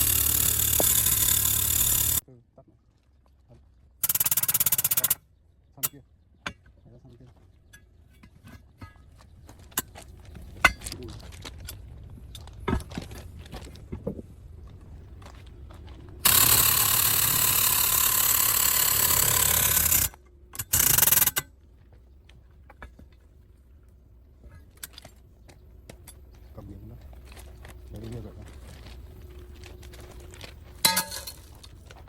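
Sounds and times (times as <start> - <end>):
tools clanking: 30.8 - 32.0.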